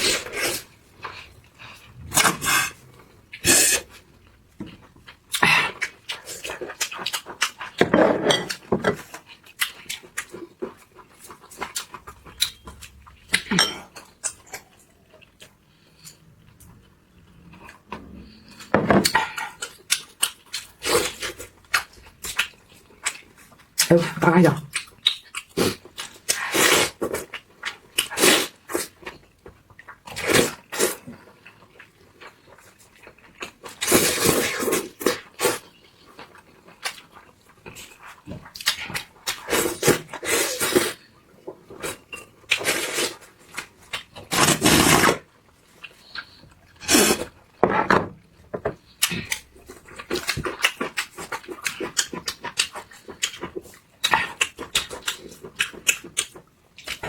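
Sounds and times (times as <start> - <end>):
chewing and gnawing meat: 4.0 - 7.8, 8.5 - 24.0, 24.7 - 40.2, 48.3 - 57.0.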